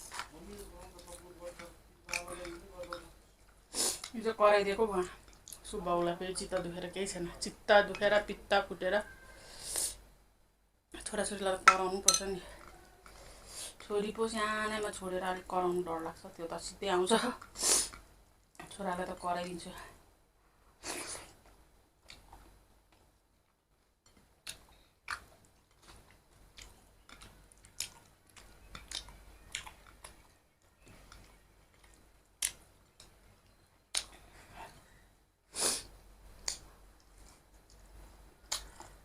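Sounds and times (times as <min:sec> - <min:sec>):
person chewing food: 0:21.3 - 0:35.0, 0:36.3 - 0:39.0
lip smacks: 0:38.5 - 0:39.0.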